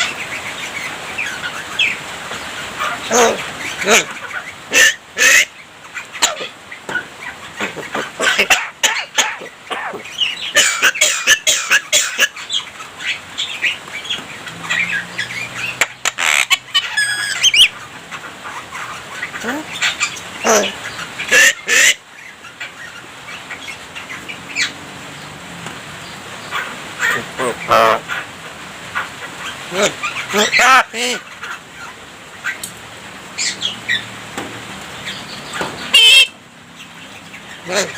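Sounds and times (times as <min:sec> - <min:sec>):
bird singing chattering song: 0:09.0 - 0:17.8, 0:35.0 - 0:37.9.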